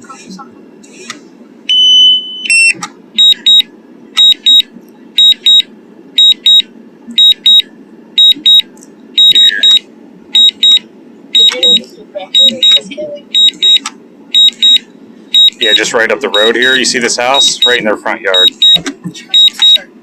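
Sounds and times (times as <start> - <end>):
held high alarm tone: 1.7 - 8.6, 9.2 - 9.8, 10.4 - 10.8, 11.4 - 11.8, 12.4 - 19.8.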